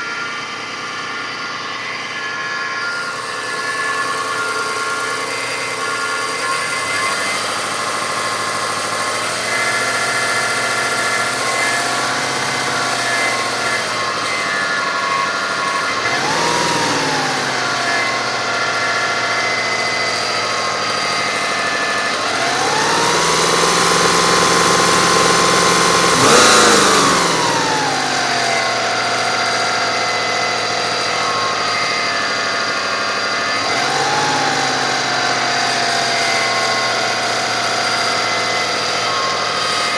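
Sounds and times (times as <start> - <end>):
car engine idling and revving: 0.0 - 39.9
engine noise at idle: 0.0 - 39.9.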